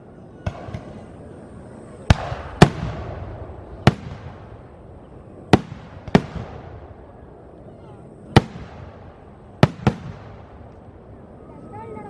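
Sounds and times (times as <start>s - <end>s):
rumbling echo: 0.4s - 7.5s
firework bangs: 2.0s - 7.1s, 8.3s - 10.8s.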